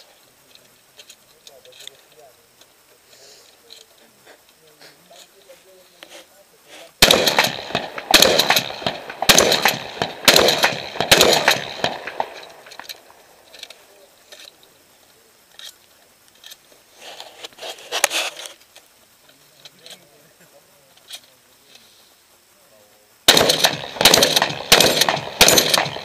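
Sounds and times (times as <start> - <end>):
shotgun shots with echo: 7.0 - 12.8, 23.3 - 26.0.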